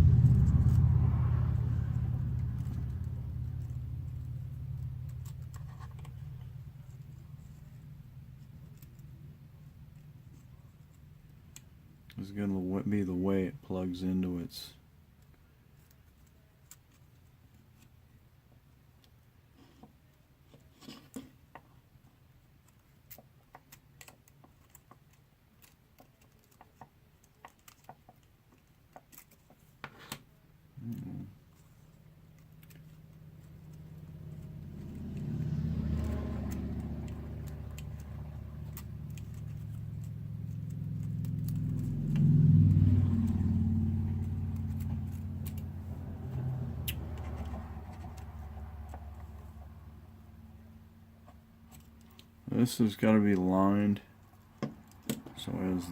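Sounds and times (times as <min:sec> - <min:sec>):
low engine rumble: 0:00.0 - 0:14.8, 0:30.8 - 0:55.9
small parts clicking and tapping: 0:02.4 - 0:09.2, 0:22.5 - 0:29.7, 0:30.9 - 0:42.4, 0:44.1 - 0:45.7, 0:54.2 - 0:55.6.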